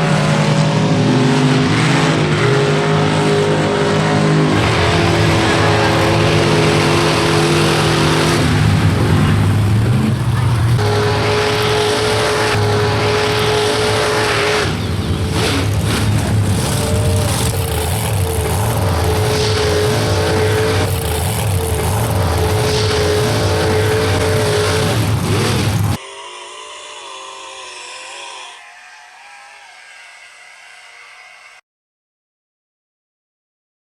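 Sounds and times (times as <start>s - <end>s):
truck engine at high revs: 0.0s - 26.0s.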